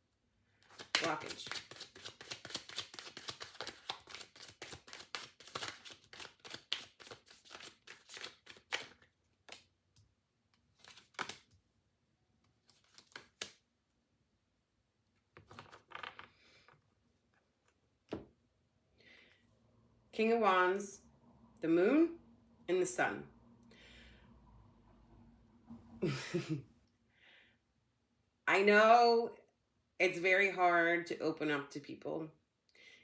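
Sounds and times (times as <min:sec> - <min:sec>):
cards being shuffled: 0:00.6 - 0:09.7, 0:10.6 - 0:11.6, 0:12.5 - 0:13.6, 0:15.4 - 0:16.7
cards rustling: 0:00.6 - 0:09.7, 0:10.6 - 0:11.5, 0:12.5 - 0:13.6, 0:15.4 - 0:16.7.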